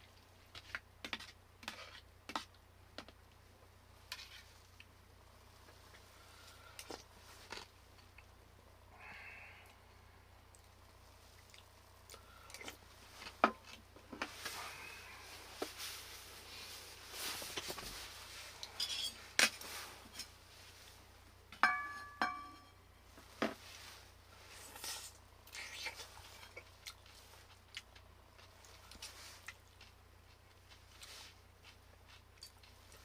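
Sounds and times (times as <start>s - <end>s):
dishes and utensils clattering: 18.7s - 19.2s, 21.6s - 22.8s
bright ringing clinks: 21.6s - 22.7s.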